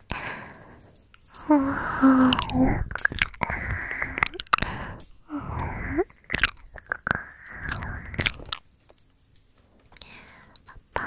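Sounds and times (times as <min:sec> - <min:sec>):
breathing: 0:00.0 - 0:06.1, 0:07.1 - 0:08.4, 0:09.9 - 0:11.0
lip and tongue smacks and clicks: 0:02.2 - 0:08.7.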